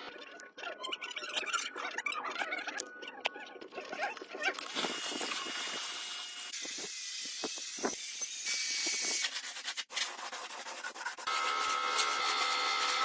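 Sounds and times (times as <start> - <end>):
abrasive sanding and rubbing: 6.6 - 13.0
power tool whine: 11.3 - 13.0.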